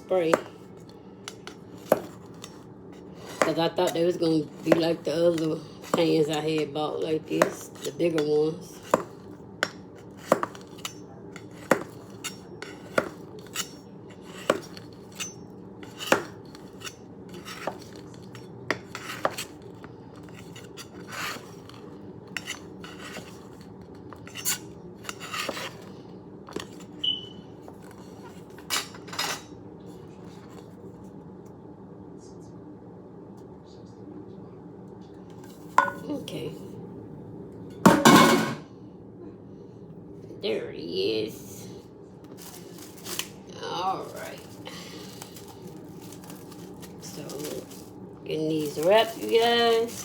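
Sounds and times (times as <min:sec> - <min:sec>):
utensil clinking on cake pans: 0:03.2 - 0:19.5, 0:35.8 - 0:36.2, 0:37.9 - 0:38.7.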